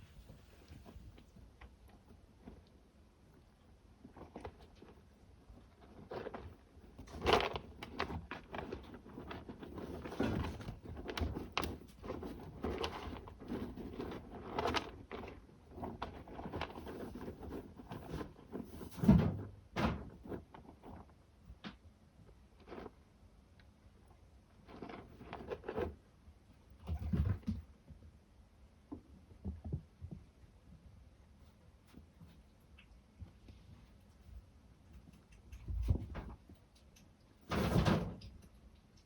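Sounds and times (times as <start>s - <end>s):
kittens scratching in cat litter: 3.4s - 21.2s, 24.5s - 27.6s.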